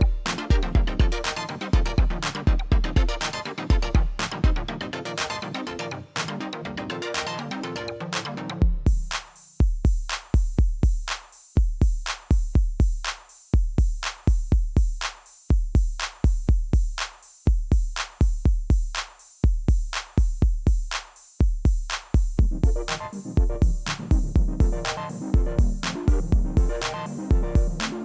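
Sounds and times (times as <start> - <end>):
electronic drum machine beat: 0.0 - 6.4, 8.2 - 28.0.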